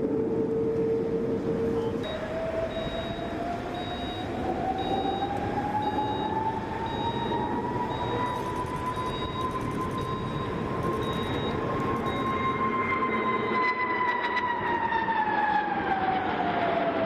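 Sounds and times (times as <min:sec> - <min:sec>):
machine whine: 0:00.0 - 0:16.4
short high beeps: 0:06.9 - 0:12.6.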